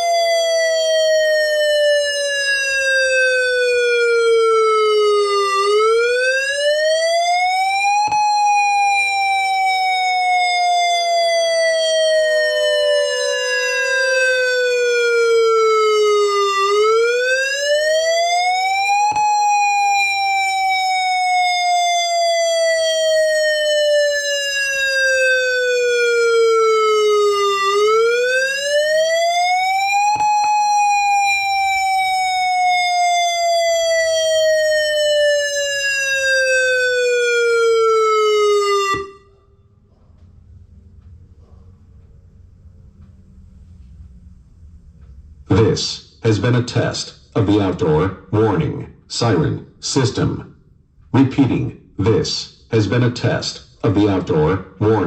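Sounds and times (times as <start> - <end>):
warning siren wailing: 0.0 - 39.6
fainter second siren tone: 0.0 - 39.7
siren click: 7.6 - 26.0.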